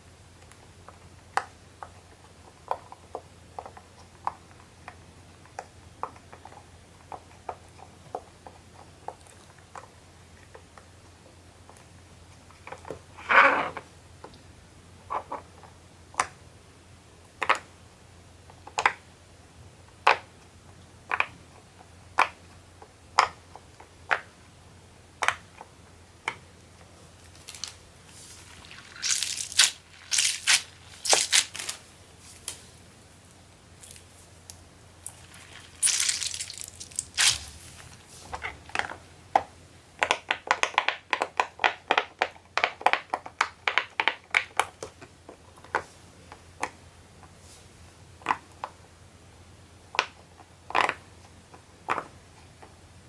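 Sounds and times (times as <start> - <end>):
crinkly squishy handling: 27.2 - 38.9.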